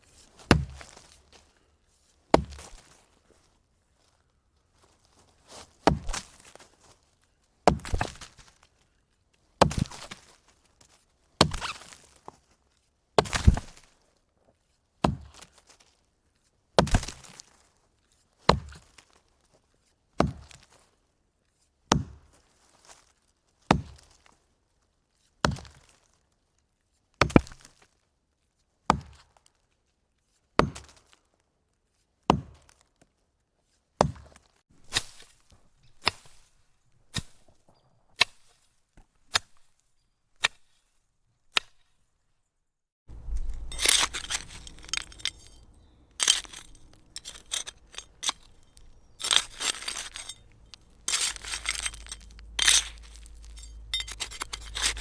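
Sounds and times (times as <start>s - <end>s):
axe chopping log: 13.2s - 13.8s.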